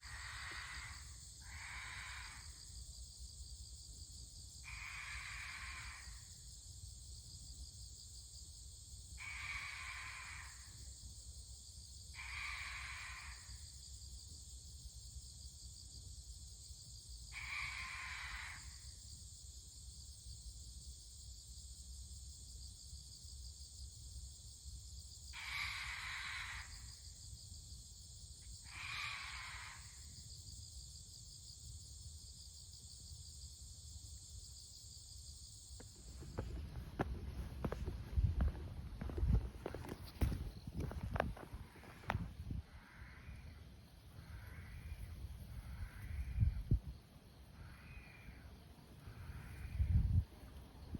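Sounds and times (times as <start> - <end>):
owl screeching call: 0.0 - 2.5, 4.7 - 6.2, 9.2 - 10.6, 12.2 - 13.4, 17.4 - 18.7, 25.4 - 26.9, 28.6 - 30.0
insect chorus: 0.0 - 50.9.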